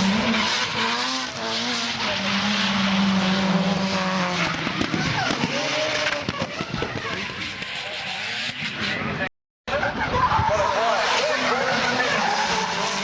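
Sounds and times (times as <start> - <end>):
car engine revving: 0.0 - 9.3
tyres skidding and squealing: 0.0 - 13.0.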